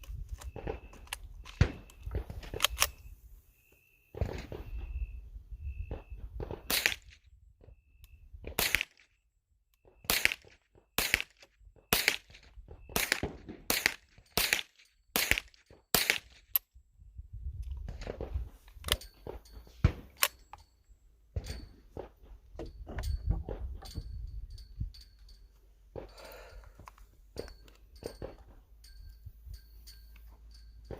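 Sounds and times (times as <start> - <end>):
pistol shots: 6.4 - 7.2, 8.5 - 9.0, 10.0 - 16.5.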